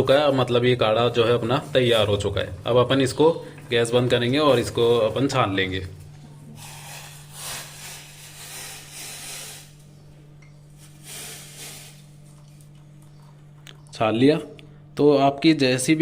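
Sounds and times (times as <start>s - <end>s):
hot liquid poured through strainer: 6.5s - 9.8s, 10.8s - 12.4s.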